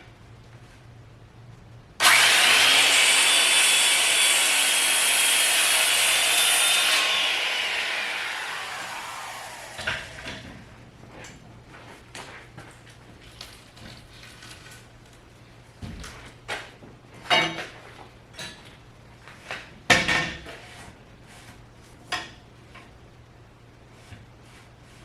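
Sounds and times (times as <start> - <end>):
faint steady hum: 0.0 - 2.0.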